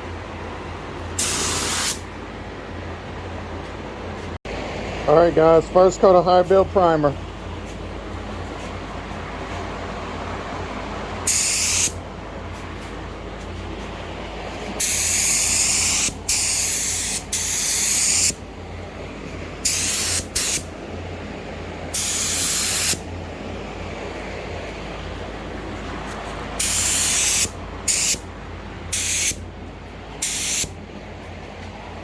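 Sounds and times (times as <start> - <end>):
steady low hum: 0.0 - 32.0
spray gun hissing: 1.2 - 2.0, 11.3 - 12.0, 14.8 - 18.4, 19.6 - 20.7, 22.0 - 23.0, 26.6 - 28.2, 28.9 - 29.4, 30.2 - 30.7.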